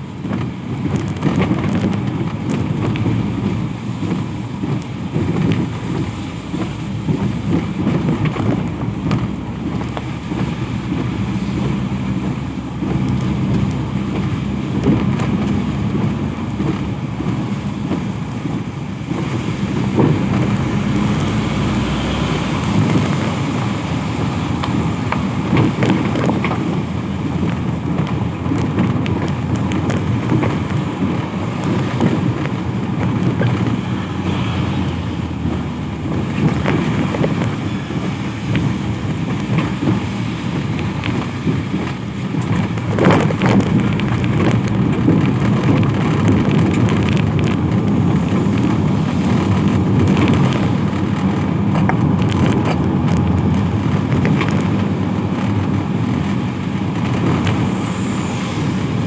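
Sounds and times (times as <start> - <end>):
rain falling: 0.0 - 59.0
traffic on wet road: 0.0 - 59.0.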